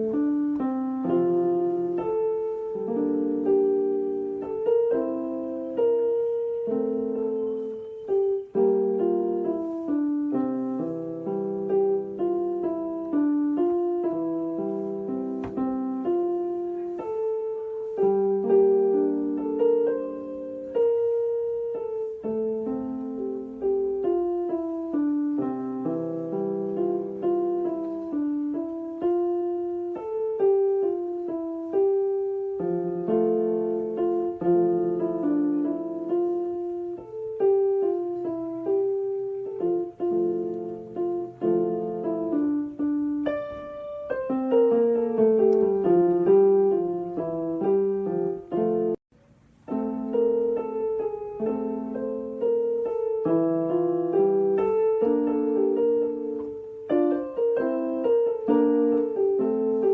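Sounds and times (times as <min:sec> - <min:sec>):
gentle piano music: 0:00.0 - 0:59.9.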